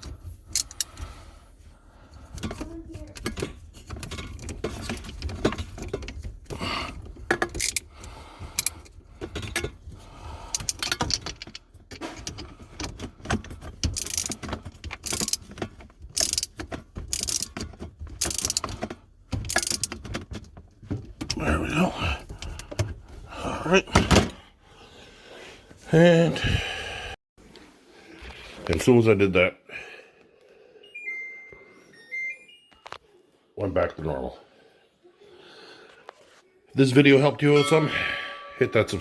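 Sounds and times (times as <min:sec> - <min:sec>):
clicks and knocks of hose fitting: 0:02.3 - 0:21.4.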